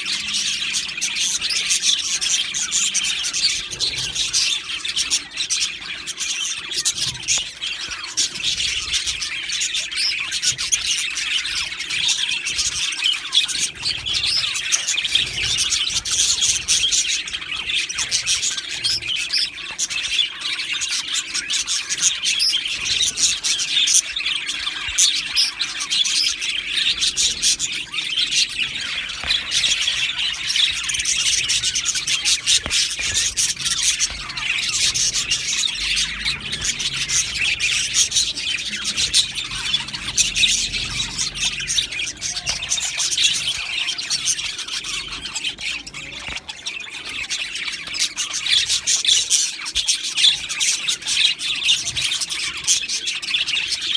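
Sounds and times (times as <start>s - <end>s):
bird squawk: 0.0s - 53.9s
budgerigars chirping: 0.0s - 53.9s.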